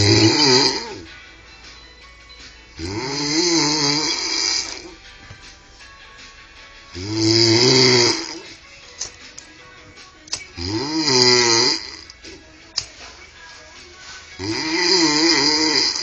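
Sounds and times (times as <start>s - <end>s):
man snoring heavily: 0.0s - 1.2s, 2.8s - 5.0s, 6.9s - 8.6s, 10.6s - 12.2s, 14.3s - 16.0s.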